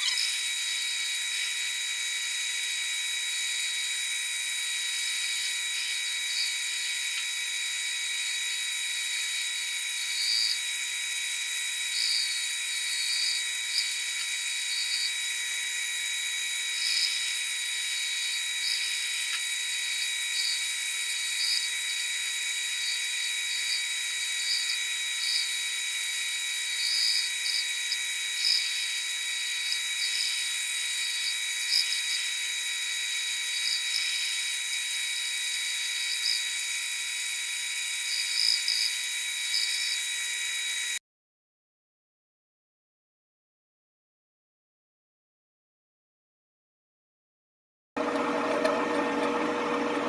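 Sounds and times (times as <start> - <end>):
cutting tool chatter: 0.0 - 41.0
metal lathe whine: 0.0 - 41.0, 48.0 - 50.0.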